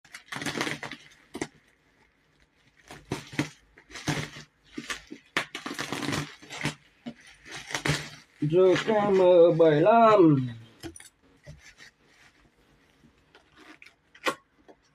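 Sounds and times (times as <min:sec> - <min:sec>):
handling scrapes and rustles: 0:00.9 - 0:14.1.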